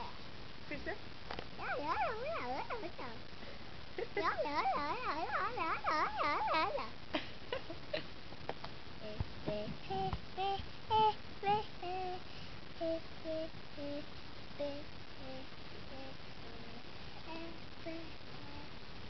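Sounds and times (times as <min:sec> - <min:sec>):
child singing a simple tune: 0:01.6 - 0:03.2, 0:04.1 - 0:07.0, 0:09.0 - 0:18.8.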